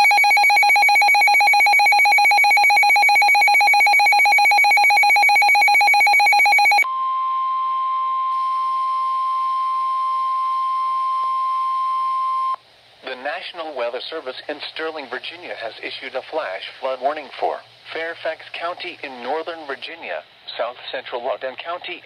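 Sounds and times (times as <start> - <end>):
pulsing buzzing alarm tone: 0.0 - 6.9
steady single-pitched alarm tone: 0.0 - 6.9.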